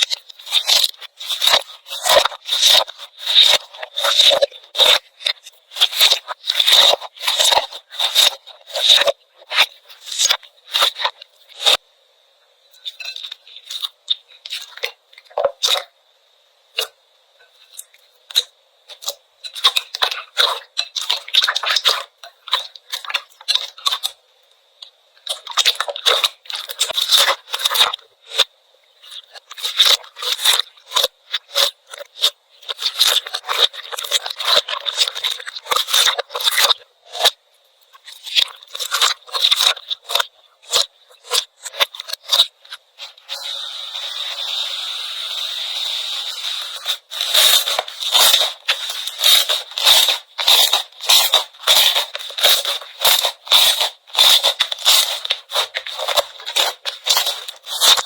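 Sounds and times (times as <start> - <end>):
slime crackling and popping: 0.0 - 11.8, 12.8 - 15.9, 17.6 - 24.2, 24.8 - 43.4, 46.0 - 58.0.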